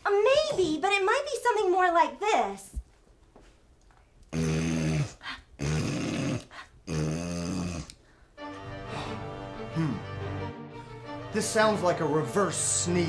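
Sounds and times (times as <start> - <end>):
person imitating reverse sneeze: 9.7 - 10.0.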